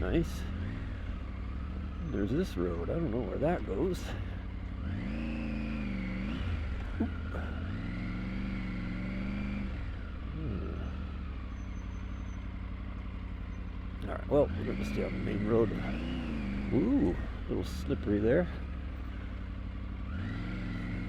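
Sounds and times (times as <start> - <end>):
motorcycle engine revving: 0.0 - 21.0
road and wind noise: 0.0 - 21.0.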